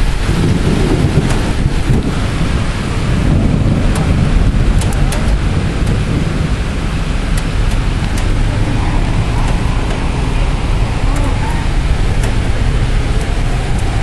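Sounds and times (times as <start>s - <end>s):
heavy rain: 0.0s - 14.0s
low thunder rumble: 0.0s - 14.0s
wind: 0.0s - 14.0s
sharp ticks: 7.3s - 8.4s, 9.4s - 10.1s, 11.0s - 11.4s, 12.0s - 13.9s.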